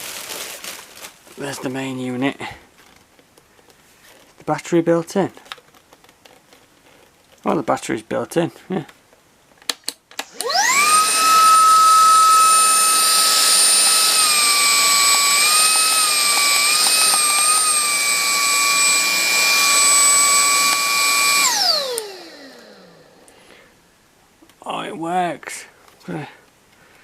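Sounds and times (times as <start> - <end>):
cordless vacuum cleaner whine: 10.2 - 23.6.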